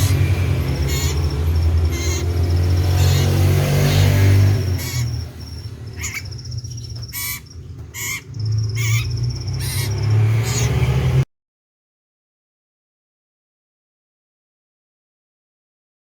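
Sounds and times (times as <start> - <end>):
bird calling sharp notes: 0.0 - 11.0.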